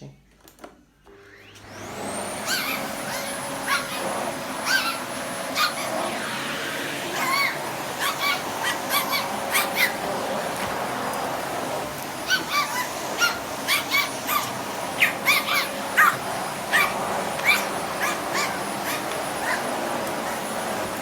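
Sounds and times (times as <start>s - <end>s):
vacuum cleaner drone: 1.1s - 21.0s
small dog yapping: 2.3s - 6.2s, 7.1s - 10.1s, 12.2s - 20.6s.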